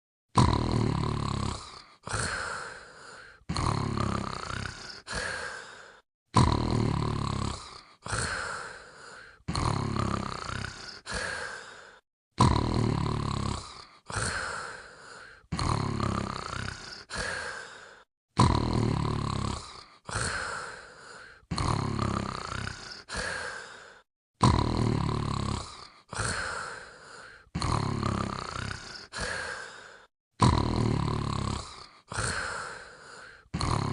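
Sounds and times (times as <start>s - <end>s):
dog snoring: 0.4s - 2.2s, 3.5s - 5.3s, 6.4s - 8.2s, 9.1s - 11.3s, 12.4s - 14.3s, 15.6s - 17.3s, 18.4s - 20.3s, 21.5s - 23.2s, 24.4s - 26.3s, 27.6s - 29.3s, 30.4s - 32.4s, 33.5s - 33.9s.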